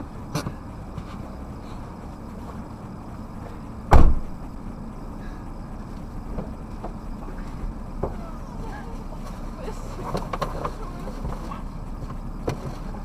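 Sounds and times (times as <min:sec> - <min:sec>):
vehicle low rumble: 0:00.0 - 0:13.0
loud thump: 0:03.9 - 0:04.5.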